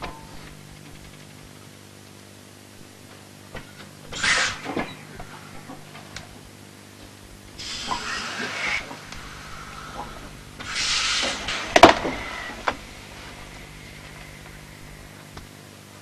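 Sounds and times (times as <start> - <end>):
steady low hum: 0.0 - 16.0
hissing bursts: 2.4 - 16.0.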